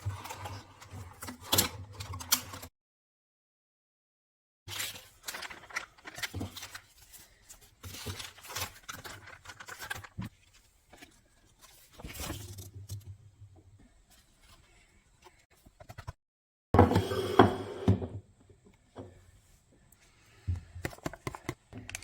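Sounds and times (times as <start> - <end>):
packaging rustling and crinkling: 4.7 - 12.7.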